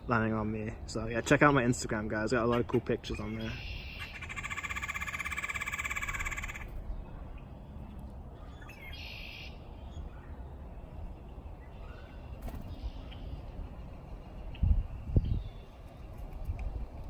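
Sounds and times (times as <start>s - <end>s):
low outdoor rumble: 0.0s - 17.0s
bird rattling call: 3.6s - 6.8s.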